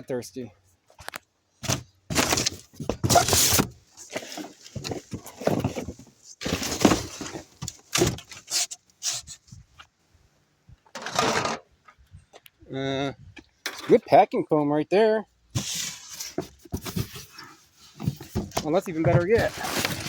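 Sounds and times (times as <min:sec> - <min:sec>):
junk clattering and knocking: 0:04.7 - 0:08.4, 0:18.0 - 0:20.0.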